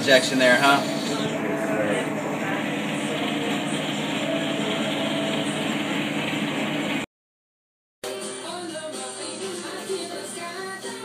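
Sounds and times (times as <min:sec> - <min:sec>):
background music: 0:00.0 - 0:06.2, 0:08.0 - 0:11.0.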